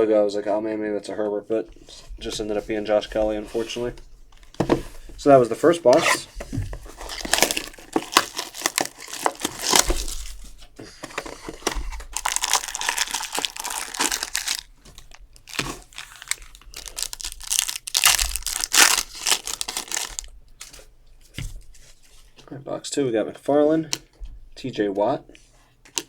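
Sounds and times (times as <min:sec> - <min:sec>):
plastic wrapping crinkling and tearing: 0:06.8 - 0:20.8.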